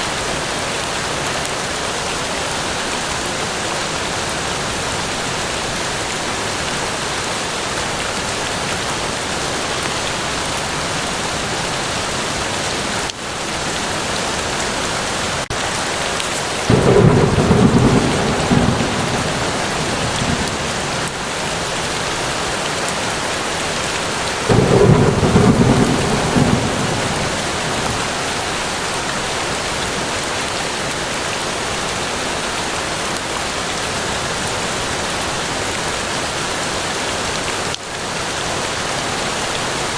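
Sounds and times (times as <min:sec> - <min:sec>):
steady rain: 0:00.0 - 0:39.9
thunder claps rumbling: 0:16.7 - 0:21.8, 0:24.5 - 0:29.0.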